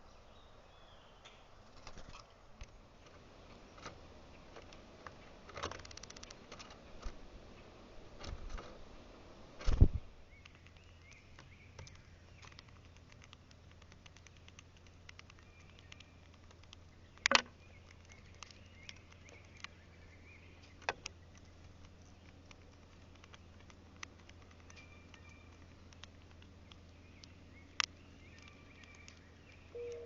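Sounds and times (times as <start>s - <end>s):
low steady hum: 0.0s - 30.0s
birds pecking at feeder: 1.6s - 30.0s
faint bird chirps: 16.9s - 22.4s, 24.6s - 30.0s.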